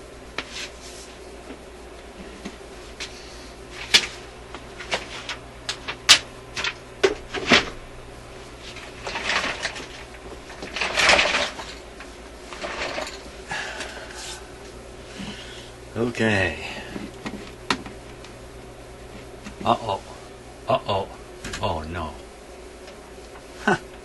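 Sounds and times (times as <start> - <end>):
faint steady hum: 0.0 - 24.0
rustling or scraping: 0.4 - 1.3, 2.2 - 6.0, 8.4 - 13.4.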